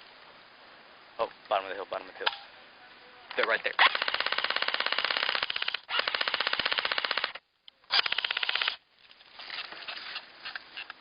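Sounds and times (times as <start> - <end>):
airsoft rifle firing bursts: 3.8 - 8.8.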